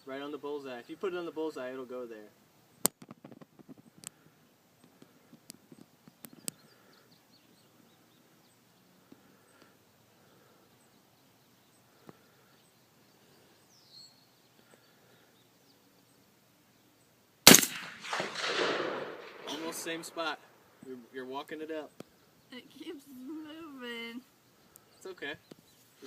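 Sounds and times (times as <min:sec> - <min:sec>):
faint chirps: 0:03.8 - 0:17.2
rifle shots: 0:17.4 - 0:20.6.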